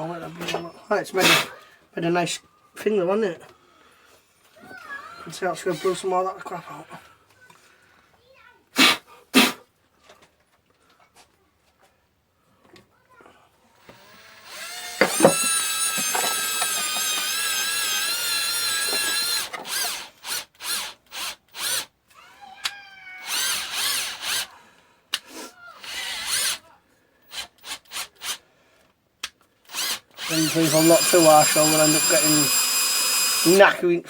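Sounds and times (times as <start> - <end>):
electric drill whining: 5.6 - 6.0, 13.8 - 21.9, 23.2 - 24.5, 25.8 - 26.6, 29.7 - 33.8.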